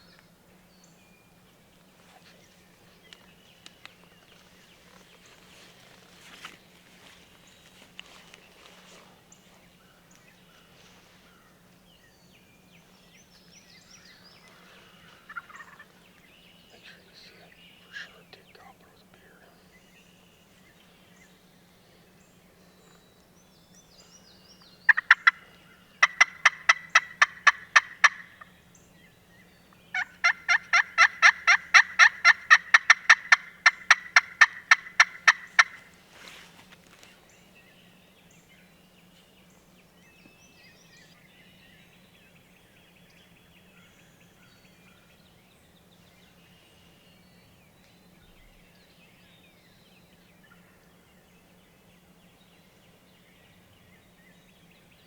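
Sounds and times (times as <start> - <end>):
turkey yelping: 15.3 - 15.8, 24.9 - 25.4, 26.0 - 28.4, 30.0 - 35.8.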